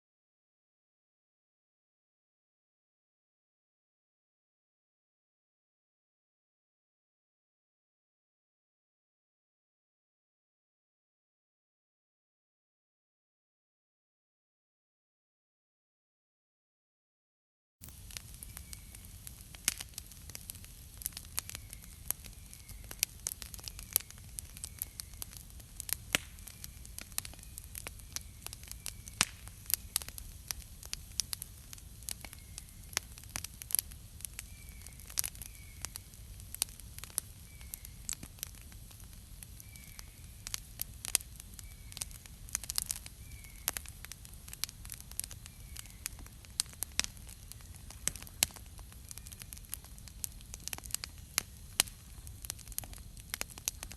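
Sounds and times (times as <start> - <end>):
campfire crackling and popping: 17.8 - 53.9.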